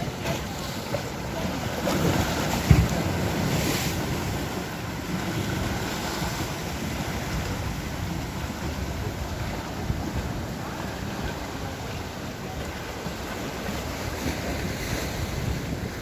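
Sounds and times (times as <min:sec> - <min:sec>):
surf breaking on shore: 0:00.0 - 0:16.0
wind rumbling on microphone: 0:00.0 - 0:16.0
low thump: 0:02.6 - 0:03.1.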